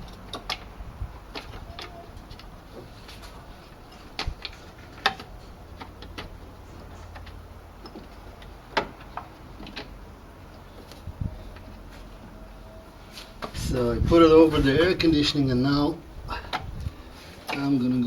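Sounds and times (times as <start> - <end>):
hand tools clicking and knocking: 0.0 - 11.7.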